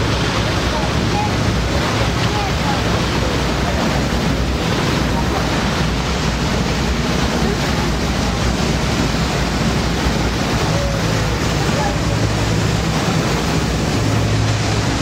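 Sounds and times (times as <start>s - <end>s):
water rushing past hull: 0.0s - 15.0s
wind buffeting microphone: 0.0s - 15.0s.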